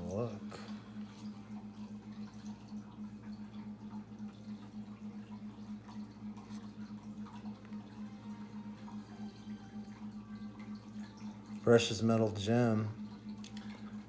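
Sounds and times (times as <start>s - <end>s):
pulsing low hum: 0.0s - 14.0s
faint light ticks: 13.4s - 13.8s.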